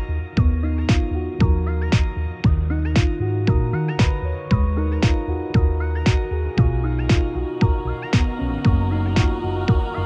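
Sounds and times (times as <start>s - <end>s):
electronic music with steady beat: 0.0s - 10.0s.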